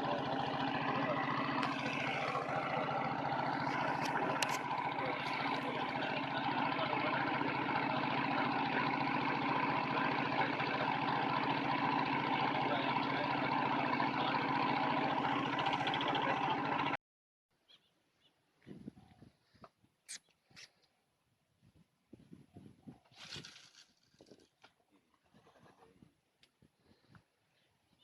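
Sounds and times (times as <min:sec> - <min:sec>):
engine running with pulsing beat: 0:00.0 - 0:17.0.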